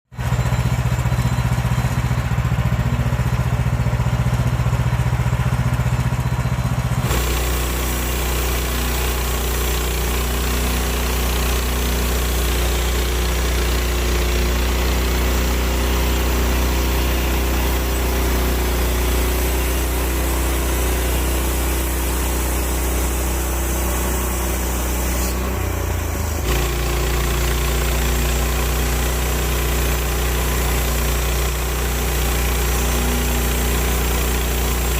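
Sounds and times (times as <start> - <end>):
sawmill gas engine running: 0.1 - 34.9.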